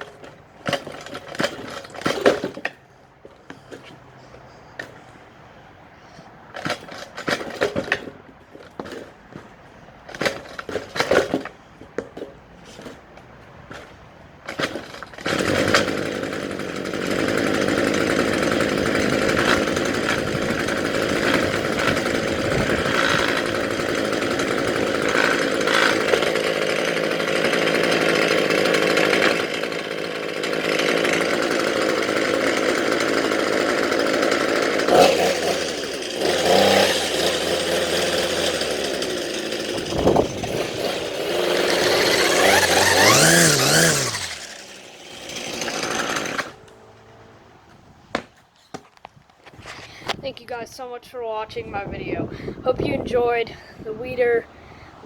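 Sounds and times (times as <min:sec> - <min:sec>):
weed eater engine revving: 0:00.0 - 0:02.8, 0:13.7 - 0:47.6.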